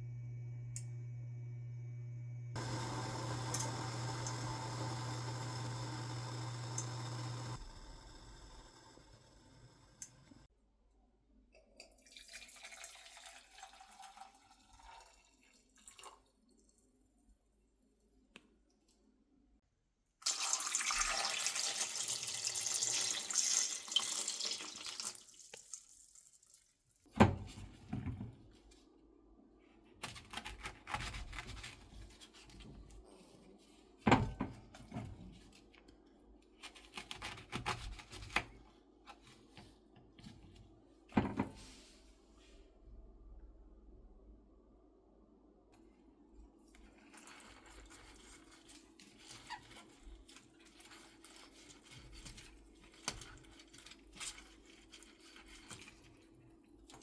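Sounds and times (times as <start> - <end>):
water running from tap: 2.6 - 7.6, 20.2 - 26.8.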